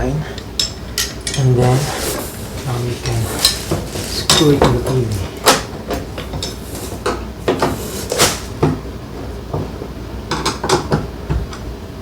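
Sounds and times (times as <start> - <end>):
metal clinks and taps: 0.4 - 1.7.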